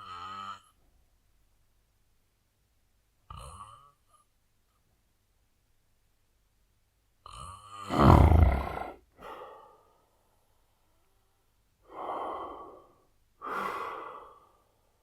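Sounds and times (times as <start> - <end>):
man snoring heavily: 7.7 - 9.5.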